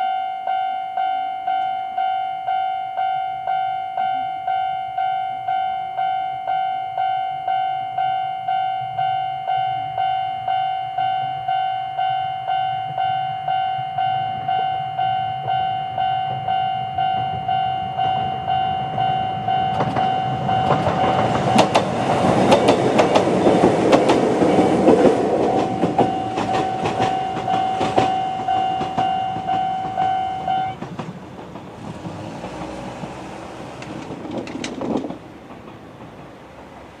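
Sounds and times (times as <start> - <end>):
level crossing alarm dinging: 0.0 - 30.8
train wheels clacking on rail joints: 15.4 - 37.0.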